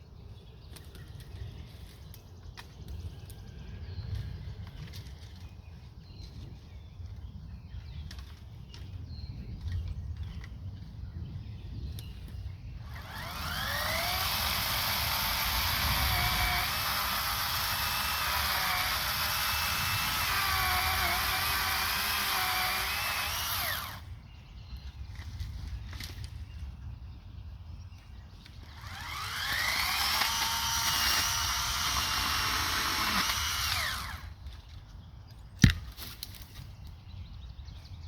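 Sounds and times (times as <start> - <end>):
electric chainsaw running: 12.8 - 24.1, 28.6 - 34.4.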